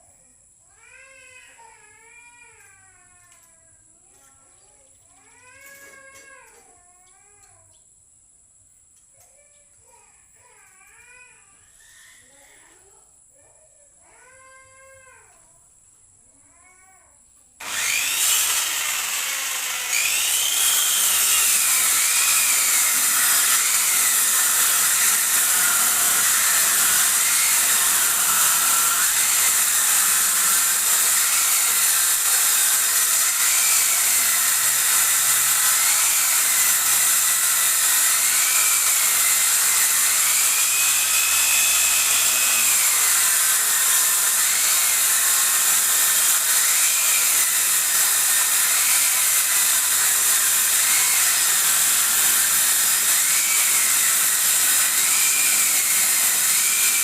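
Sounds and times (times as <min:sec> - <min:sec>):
circular saw cutting wood: 0:17.6 - 0:57.0.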